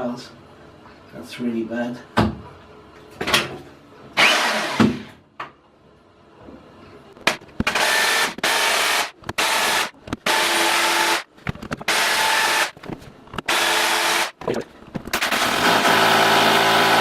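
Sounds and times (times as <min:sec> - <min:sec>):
electric drill boring into tile: 0:04.2 - 0:04.8, 0:07.8 - 0:11.2, 0:13.5 - 0:14.3, 0:15.2 - 0:17.0.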